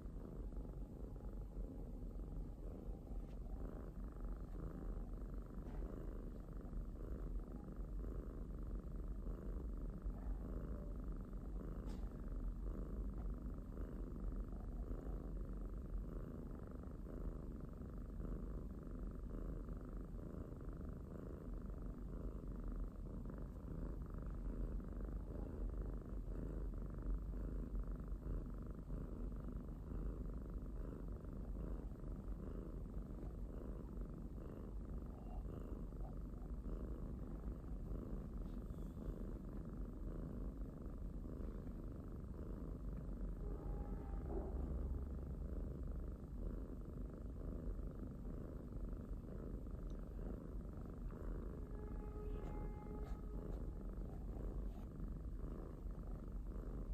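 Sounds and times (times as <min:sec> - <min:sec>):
kitten purring: 0:00.0 - 0:56.9.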